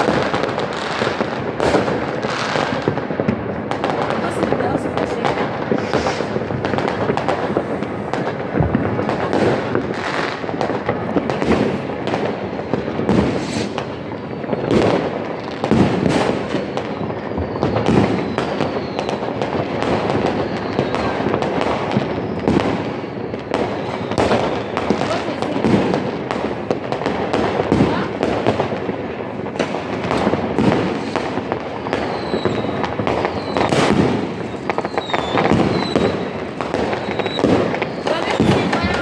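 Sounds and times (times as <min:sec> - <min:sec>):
fireworks bangs and crackles: 0:00.0 - 0:39.0
faint falling whistles: 0:16.5 - 0:25.0, 0:31.9 - 0:39.0.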